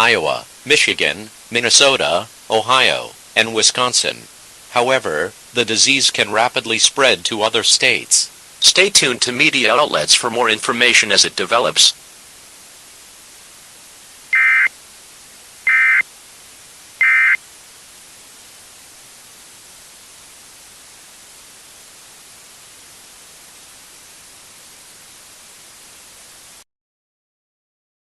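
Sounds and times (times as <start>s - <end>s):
static hiss: 0.0s - 26.7s
data tone bursts: 14.3s - 14.7s, 15.7s - 16.1s, 17.0s - 17.4s.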